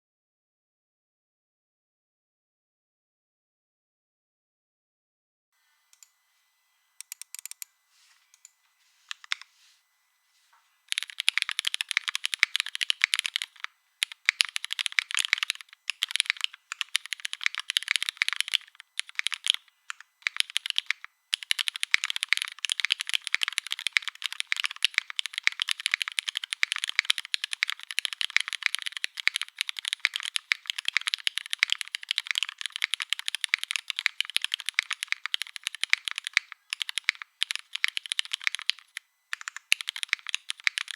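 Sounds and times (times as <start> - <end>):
typing on mechanical keyboard: 9.1 - 9.5, 10.9 - 40.9.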